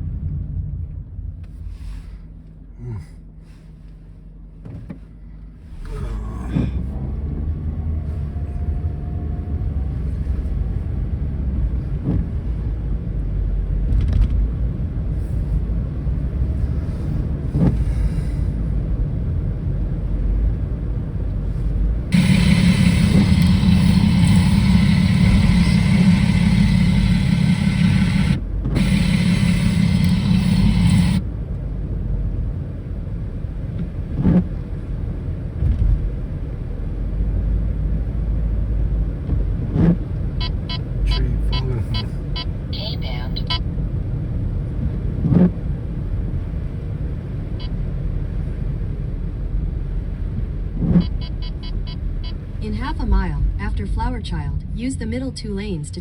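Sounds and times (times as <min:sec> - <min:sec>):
car engine and road noise: 0:00.0 - 0:56.0
loud steady hum and hiss: 0:22.1 - 0:31.2.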